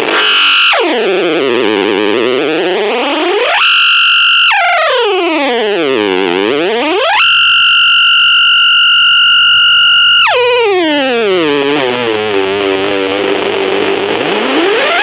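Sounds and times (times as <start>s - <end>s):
synth-like effects pedal tone: 0.0s - 15.0s.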